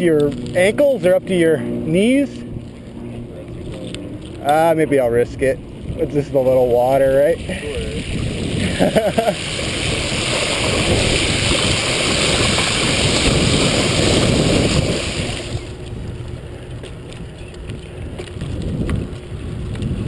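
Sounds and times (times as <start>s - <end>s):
bicycle rolling: 0.0s - 20.0s
bicycle splashing through water: 4.4s - 20.0s.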